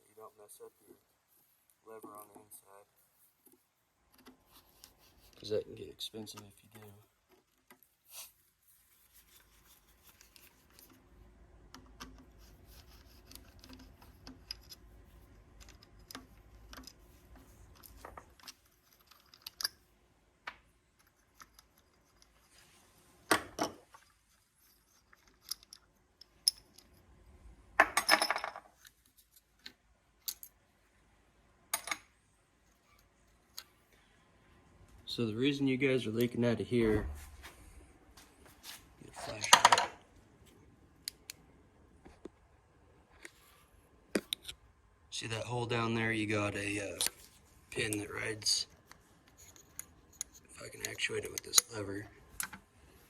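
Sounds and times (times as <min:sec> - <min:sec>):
metal pump parts clinking: 0:15.6 - 0:19.7, 0:23.6 - 0:26.9.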